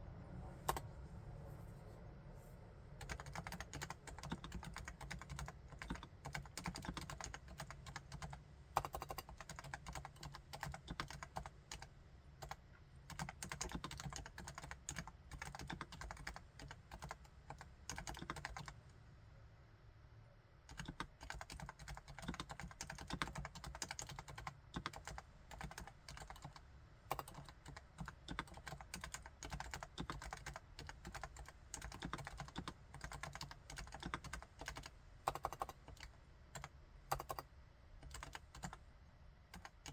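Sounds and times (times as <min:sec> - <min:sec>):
keyboard typing: 0:03.0 - 0:18.8, 0:20.7 - 0:38.8, 0:39.5 - 0:39.9.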